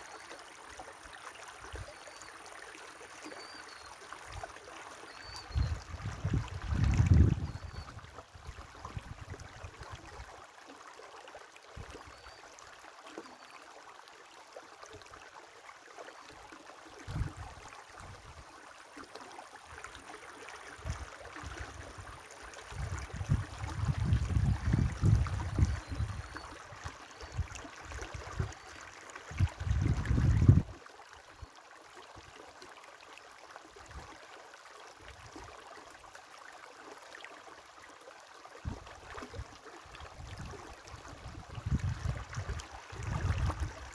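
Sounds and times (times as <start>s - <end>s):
wind buffeting microphone: 5.5s - 7.8s, 22.7s - 26.2s, 29.4s - 30.7s, 41.2s - 43.8s.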